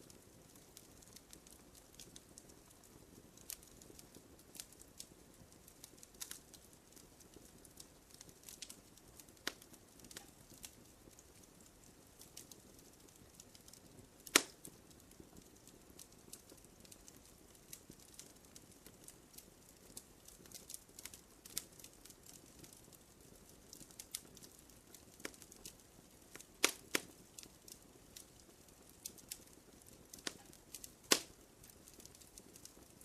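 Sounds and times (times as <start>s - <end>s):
campfire crackling and popping: 0.0s - 33.0s.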